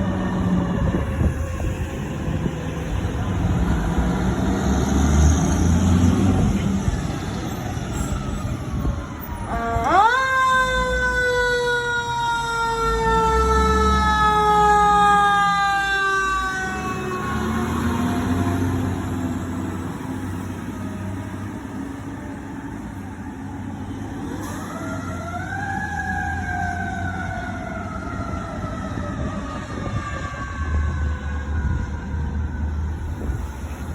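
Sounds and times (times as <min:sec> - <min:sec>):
truck engines rumbling: 0:00.0 - 0:33.9
siren winding up and falling: 0:08.3 - 0:17.9.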